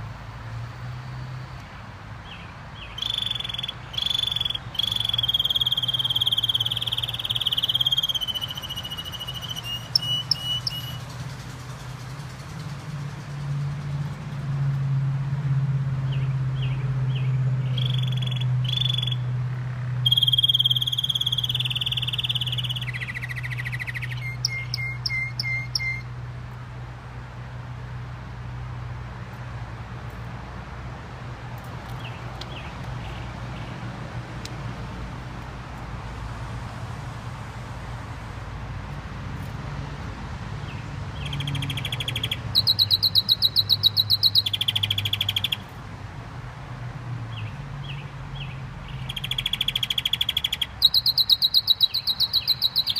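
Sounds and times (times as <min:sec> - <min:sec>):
canary singing trills: 0:02.3 - 0:11.5, 0:16.2 - 0:26.1, 0:40.7 - 0:45.7, 0:47.4 - 0:52.9.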